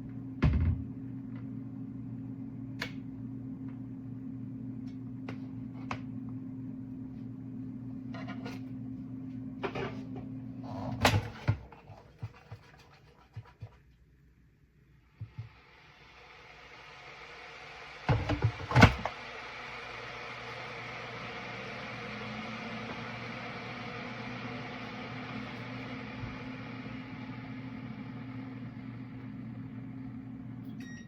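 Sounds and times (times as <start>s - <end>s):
kettle humming: 0.0s - 13.8s, 14.8s - 31.0s.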